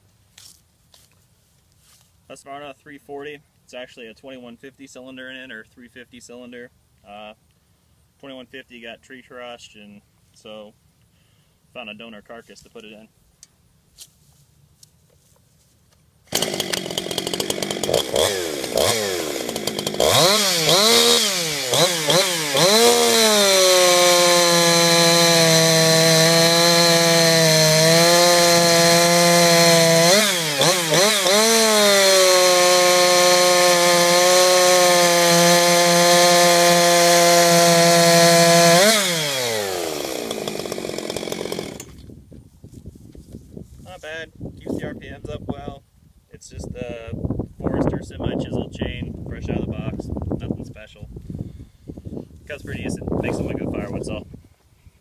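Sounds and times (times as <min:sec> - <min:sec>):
chainsaw running: 0:16.3 - 0:42.1.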